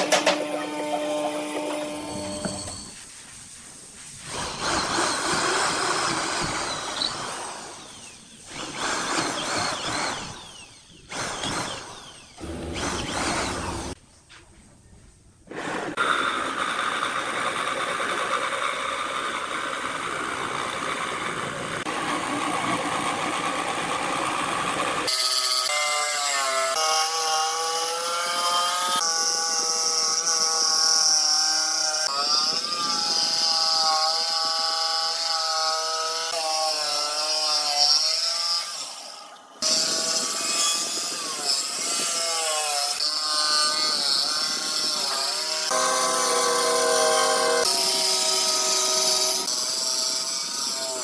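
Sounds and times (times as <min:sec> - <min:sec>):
power tool motor whine: 0:00.0 - 0:03.0, 0:04.3 - 0:14.0, 0:21.8 - 0:51.0
wood cutting hiss: 0:00.0 - 0:14.0, 0:25.1 - 0:51.0.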